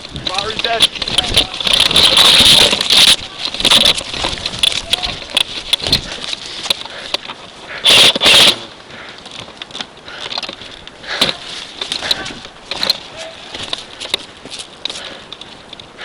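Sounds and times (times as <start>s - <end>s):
loud rustling burst: 0.0s - 9.1s.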